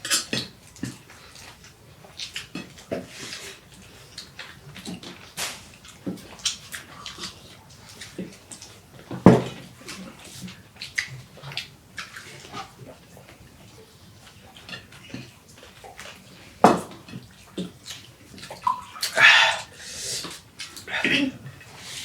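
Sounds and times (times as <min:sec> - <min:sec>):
wet chewing: 0:00.4 - 0:09.0.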